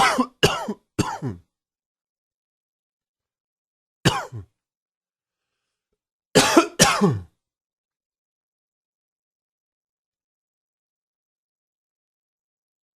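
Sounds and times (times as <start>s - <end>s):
man coughing: 0.0s - 1.4s, 4.1s - 4.5s, 6.4s - 7.3s.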